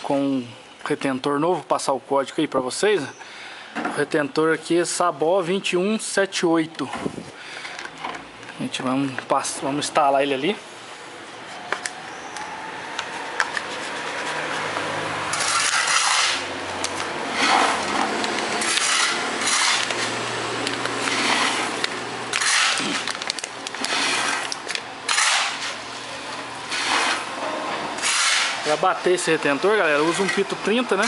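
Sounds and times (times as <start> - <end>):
hand rubbing strokes: 11.3 - 16.5.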